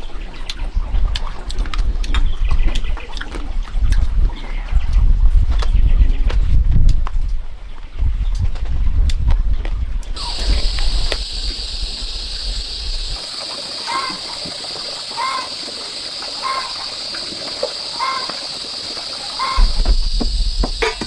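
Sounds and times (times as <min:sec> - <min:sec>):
insects droning: 0:10.2 - 0:21.0.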